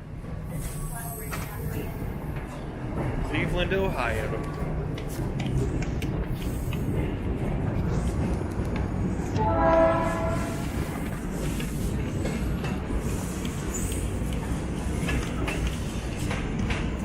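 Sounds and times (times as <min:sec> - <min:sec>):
short horn blast: 0:09.4 - 0:10.7.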